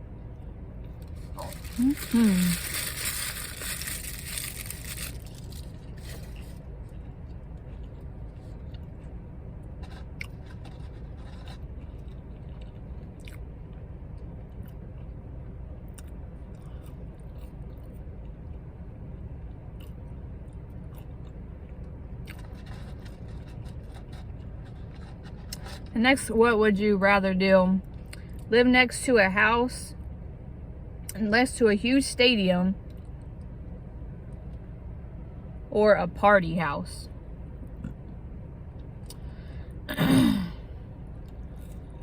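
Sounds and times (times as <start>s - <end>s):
low background hum: 0.0s - 42.0s
person chewing food: 9.8s - 13.8s, 15.9s - 18.4s, 19.8s - 25.6s.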